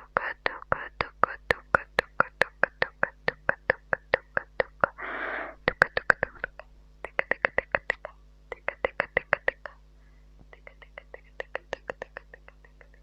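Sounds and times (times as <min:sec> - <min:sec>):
breathy whispered hiss: 0:04.8 - 0:06.3
tongue clicks: 0:10.5 - 0:13.0.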